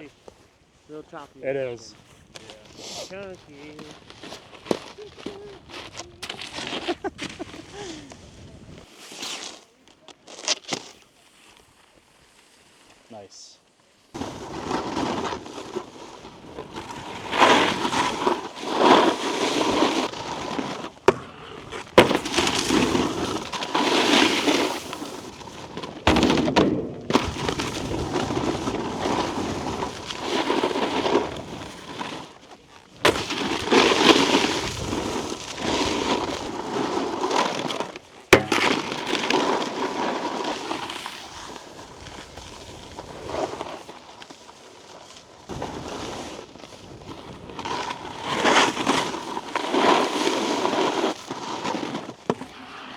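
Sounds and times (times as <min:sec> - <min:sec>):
snowboard scraping icy snow: 0:00.0 - 0:52.9
snowboard knocks: 0:14.2 - 0:32.4, 0:33.0 - 0:44.3, 0:45.5 - 0:52.6.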